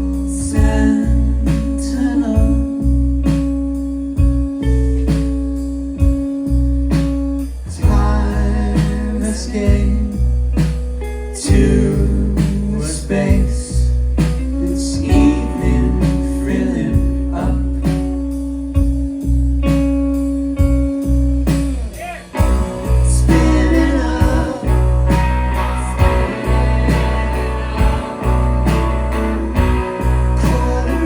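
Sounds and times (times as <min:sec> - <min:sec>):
sustained bass: 0:00.0 - 0:31.0
held guitar notes: 0:18.7 - 0:31.0
drum beat: 0:21.5 - 0:31.0.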